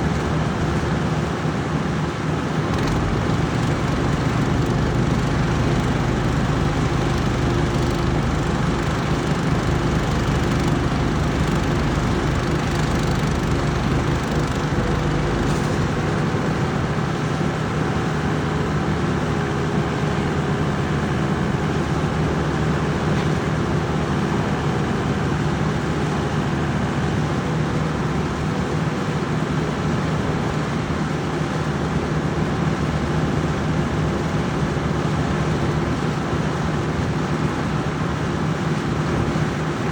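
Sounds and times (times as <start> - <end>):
engine running: 2.2 - 27.2.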